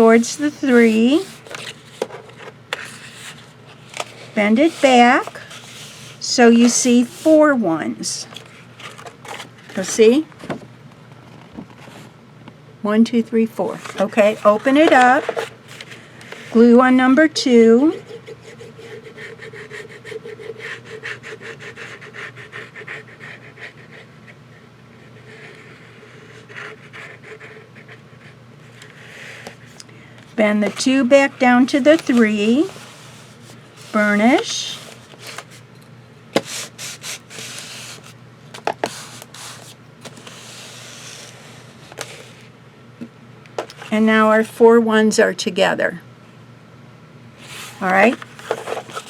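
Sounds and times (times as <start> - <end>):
rubbing over paper: 0.0 - 2.1, 2.7 - 7.5, 13.7 - 16.9, 30.4 - 35.6, 36.4 - 38.2, 38.8 - 42.4, 47.4 - 49.0
faint steady hum: 0.0 - 49.0
paper handling clicks: 0.2 - 7.0, 31.7 - 35.6, 36.4 - 42.5, 47.4 - 49.0.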